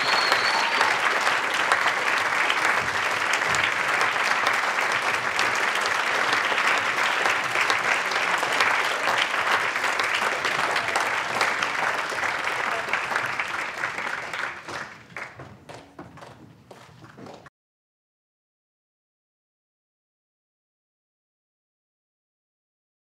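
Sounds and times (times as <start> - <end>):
crowd cheering: 0.0 - 16.0
crowd applauding: 0.0 - 17.5.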